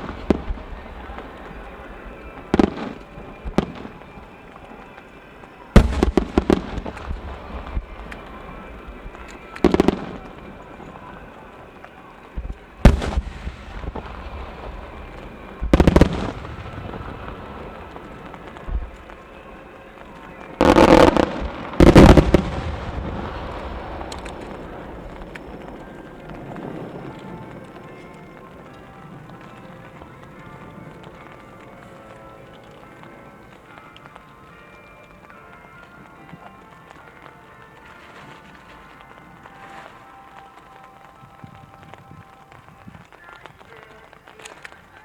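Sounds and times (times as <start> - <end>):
firework booms and crackles: 0.0 - 45.0.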